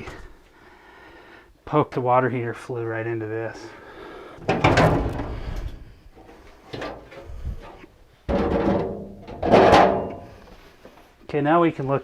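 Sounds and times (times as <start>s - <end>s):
sheet metal knocks and scrapes: 4.4s - 10.4s
sheet metal rattling: 4.4s - 10.4s.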